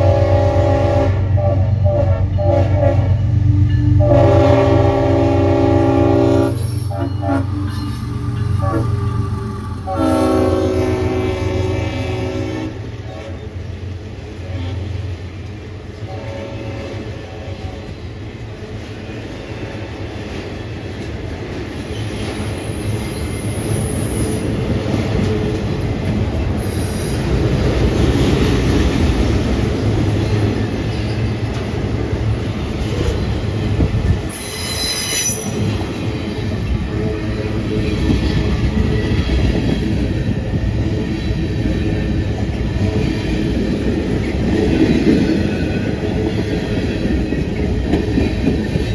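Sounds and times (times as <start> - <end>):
freight train wheels rumbling: 0.0 - 48.9
wheel squeal: 6.6 - 9.7, 34.3 - 35.8.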